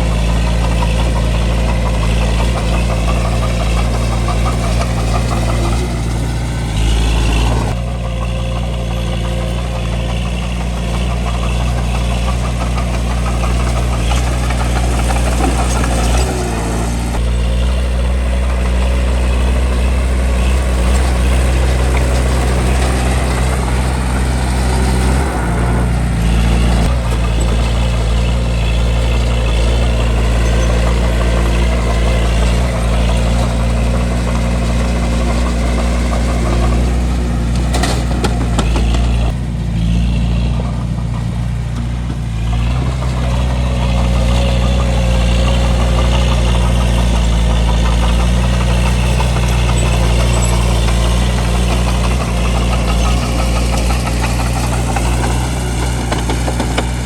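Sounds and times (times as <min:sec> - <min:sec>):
bulldozer diesel engine running: 0:00.0 - 0:57.0.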